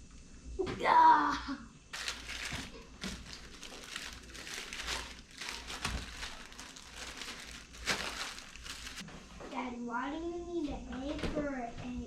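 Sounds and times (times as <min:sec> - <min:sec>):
plastic wrapper crinkling: 0:01.9 - 0:09.1.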